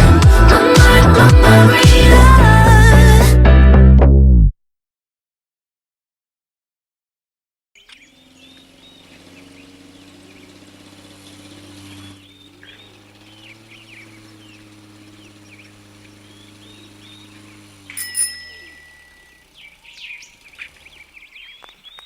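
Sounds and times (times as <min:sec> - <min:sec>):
birds chirping: 0:07.8 - 0:22.0
loud short ringing: 0:17.9 - 0:19.4.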